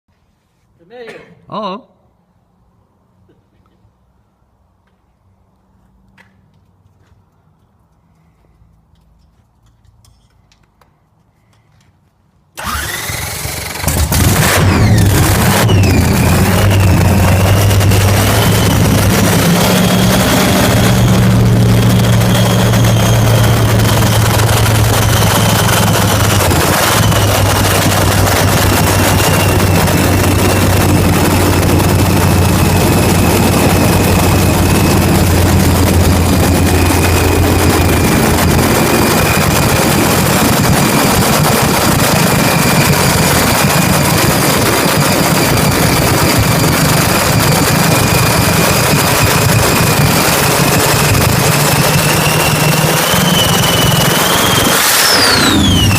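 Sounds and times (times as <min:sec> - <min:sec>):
high supercharger whine: 0:12.6 - 0:55.9
supercharged engine running loud: 0:12.6 - 0:55.9.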